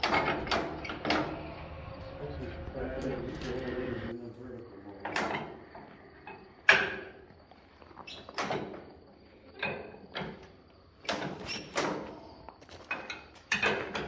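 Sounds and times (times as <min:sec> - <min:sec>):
metal tools knocking and clanking: 0:00.0 - 0:01.5, 0:09.6 - 0:12.0, 0:12.8 - 0:14.0.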